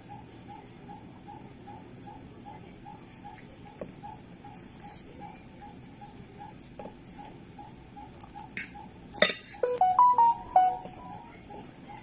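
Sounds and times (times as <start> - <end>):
chime melody: 9.6 - 11.3.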